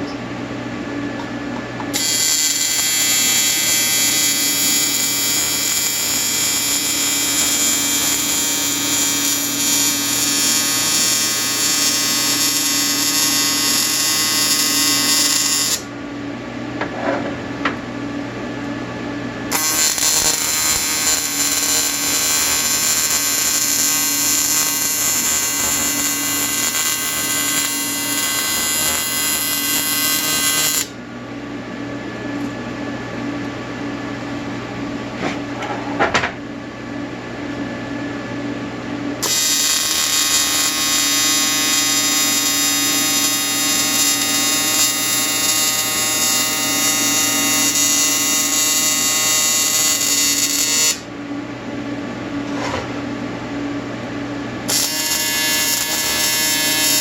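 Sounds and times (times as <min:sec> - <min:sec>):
welding machine low hum: 0:00.9 - 0:16.0, 0:19.4 - 0:31.0, 0:39.1 - 0:51.5, 0:52.2 - 0:57.0
welding arc buzzing: 0:01.9 - 0:15.9, 0:19.5 - 0:31.0, 0:39.2 - 0:51.1, 0:54.6 - 0:57.0.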